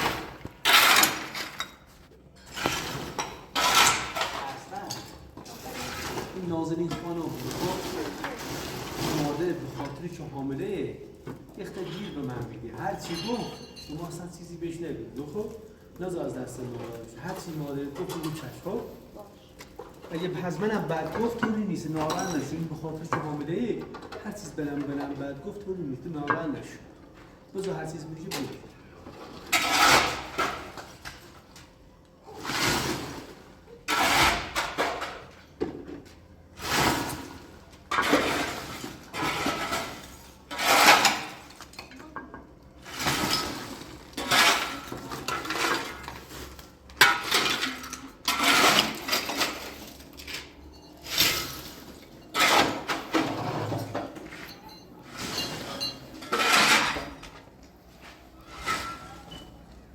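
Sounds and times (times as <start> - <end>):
dishes and pots clattering: 13.0 - 14.0, 46.9 - 57.3.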